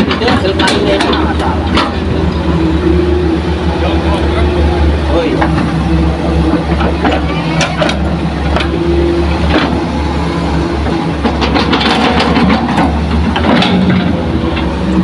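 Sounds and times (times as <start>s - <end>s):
heavy diesel engine running: 0.0s - 15.0s
short knocks and clatters: 11.2s - 14.7s.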